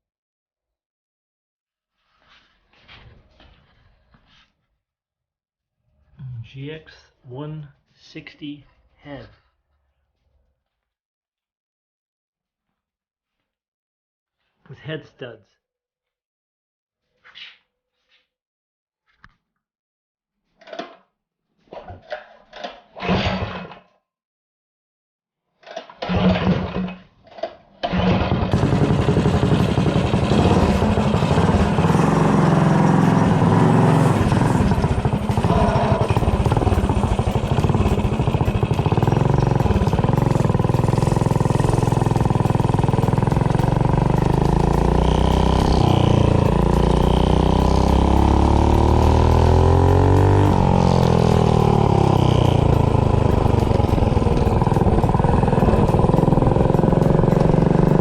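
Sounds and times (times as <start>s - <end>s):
small engine starting and running: 27.8s - 58.0s.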